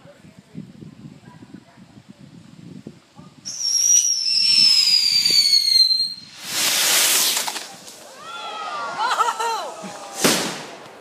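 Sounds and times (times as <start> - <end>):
loud firework hiss: 2.6 - 8.2, 10.0 - 11.0
firework whistle falling in pitch: 3.5 - 6.3.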